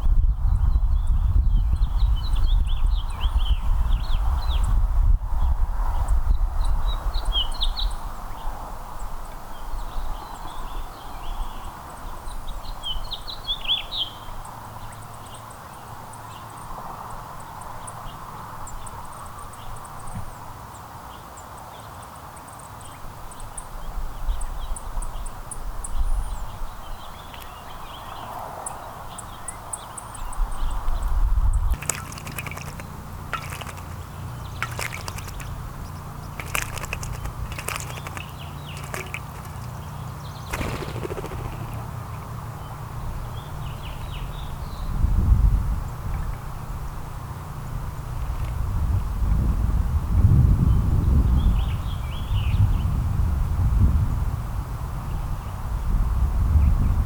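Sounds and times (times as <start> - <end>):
small songbirds chirping: 21.6 - 44.9
sharp clicks and crackles: 31.7 - 35.6, 36.4 - 42.2.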